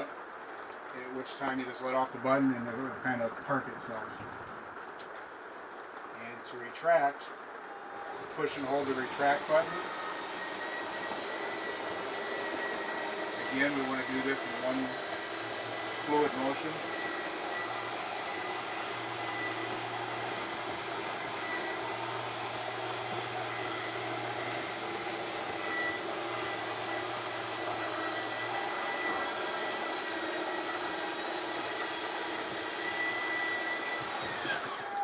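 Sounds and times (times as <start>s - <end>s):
electric motor whine: 7.6s - 35.0s.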